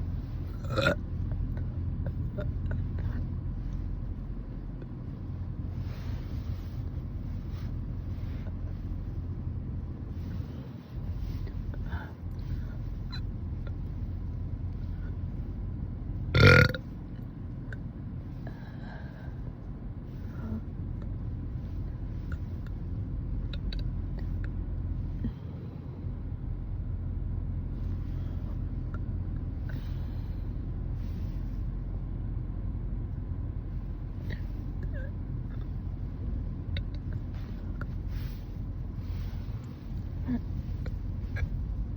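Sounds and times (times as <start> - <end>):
low background rumble: 0.0 - 41.9
woman burping: 0.6 - 1.0, 16.4 - 16.8.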